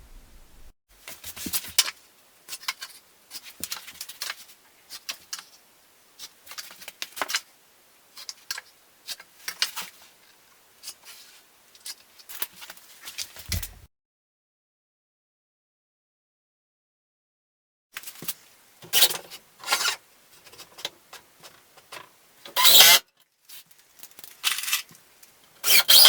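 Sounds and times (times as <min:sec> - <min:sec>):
dull thump: 0:13.5 - 0:13.9.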